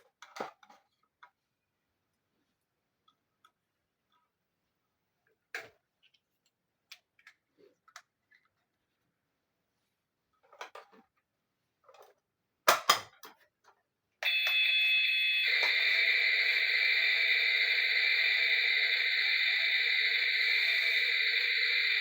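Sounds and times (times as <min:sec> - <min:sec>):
high-pitched electronic buzzing: 0:14.3 - 0:22.0.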